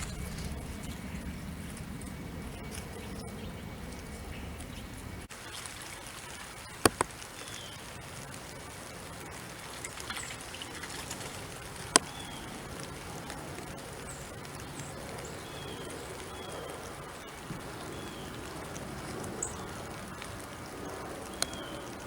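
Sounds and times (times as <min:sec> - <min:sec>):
soft rain falling: 0:00.0 - 0:22.0
sharp ticks: 0:05.9 - 0:22.0.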